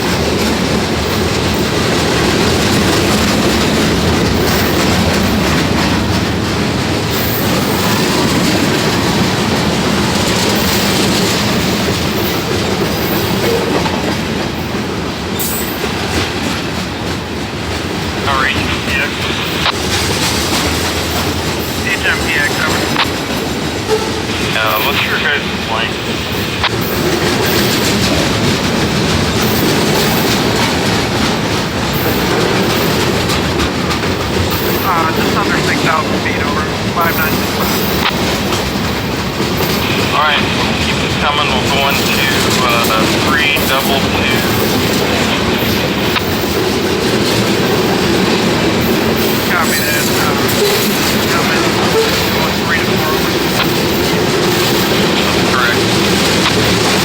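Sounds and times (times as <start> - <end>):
wheels clacking over rails: 0.0 - 18.2, 26.3 - 34.8
freight train rumble: 0.0 - 57.0.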